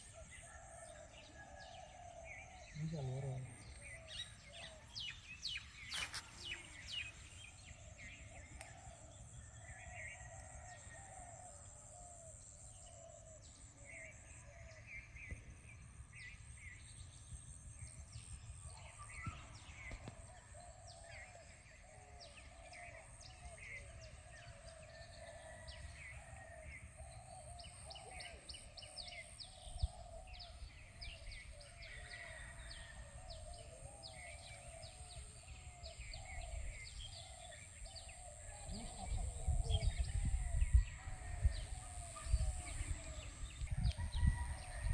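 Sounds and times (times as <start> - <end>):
wind rumble on microphone: 38.0 - 44.9.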